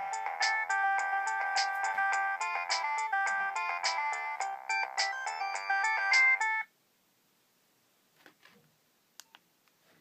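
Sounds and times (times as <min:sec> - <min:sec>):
polyphonic ringtone melody: 0:00.0 - 0:06.7.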